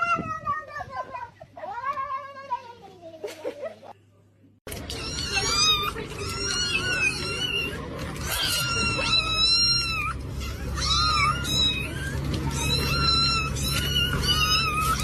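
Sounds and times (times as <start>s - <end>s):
cat meowing: 4.9s - 15.0s.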